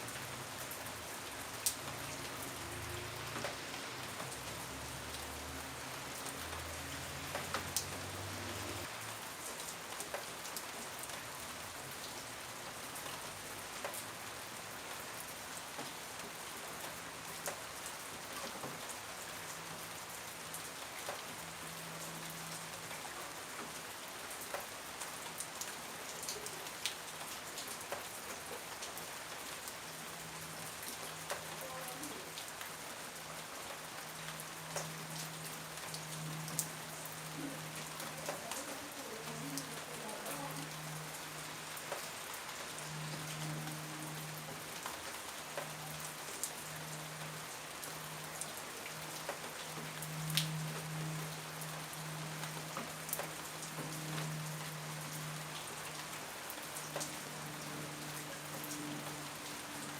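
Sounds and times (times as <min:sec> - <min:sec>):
steady rain hiss: 0:00.0 - 0:59.9
raindrops ticking: 0:01.6 - 0:11.2, 0:33.6 - 0:47.3, 0:48.4 - 0:56.0, 0:56.8 - 0:59.8.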